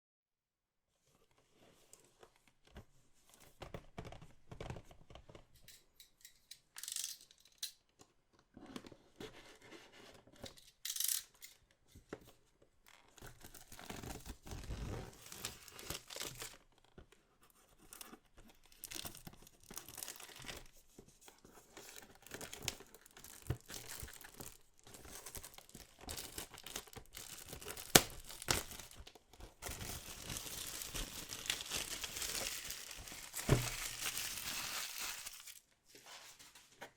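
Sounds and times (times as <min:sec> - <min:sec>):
plastic wrapping torn open: 0:13.5 - 0:16.6, 0:22.2 - 0:35.7.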